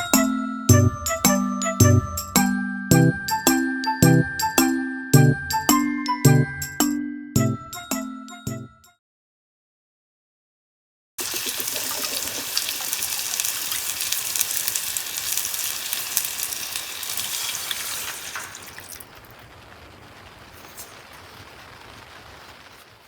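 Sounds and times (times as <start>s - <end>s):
food sizzling on a pan: 11.2s - 23.0s.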